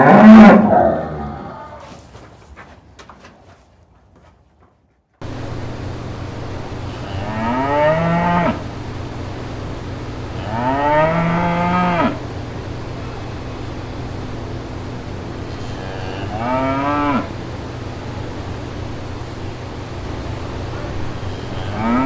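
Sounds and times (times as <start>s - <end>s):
cow mooing: 0.0s - 1.9s, 6.9s - 8.6s, 10.4s - 12.2s, 15.6s - 17.4s, 21.1s - 22.0s
steady low hum: 0.0s - 3.2s, 4.0s - 22.0s.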